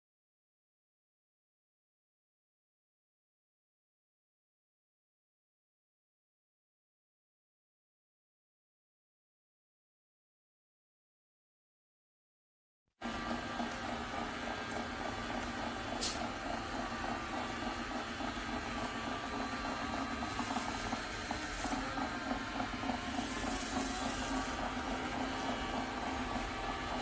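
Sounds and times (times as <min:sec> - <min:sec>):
robot vacuum motor hum: 0:13.0 - 0:27.0.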